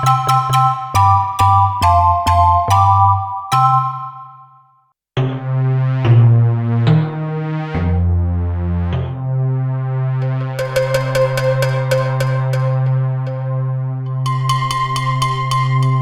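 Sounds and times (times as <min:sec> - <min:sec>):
synthesizer chords with bass line: 0:00.0 - 0:04.3, 0:05.2 - 0:16.0
plucked rhythmic synthesizer: 0:00.0 - 0:04.6, 0:05.2 - 0:16.0
bell-like synthesizer note: 0:10.2 - 0:16.0.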